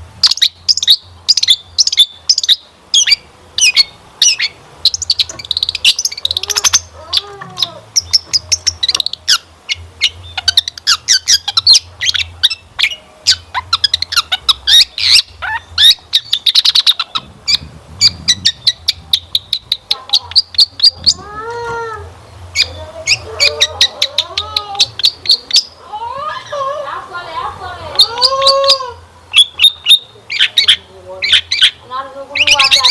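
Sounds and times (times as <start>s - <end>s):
shrike singing: 0.2s - 32.9s.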